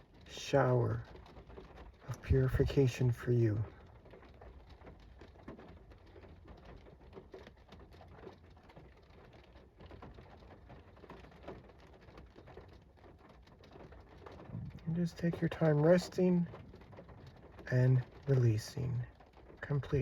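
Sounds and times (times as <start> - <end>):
raindrops pattering: 0.0 - 20.0
low steady hum: 14.4 - 20.0.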